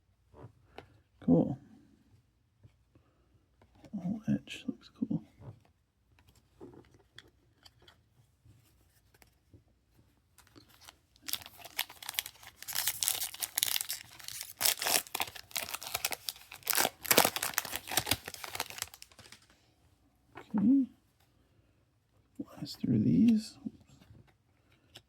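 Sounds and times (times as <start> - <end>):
foil wrapper tearing and crinkling: 10.8 - 19.4.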